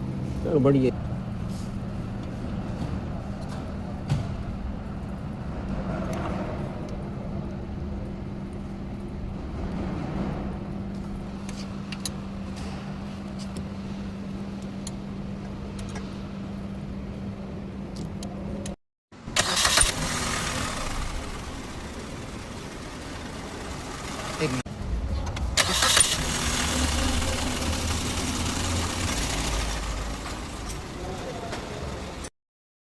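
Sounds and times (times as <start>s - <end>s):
car engine humming: 10.4s - 32.3s.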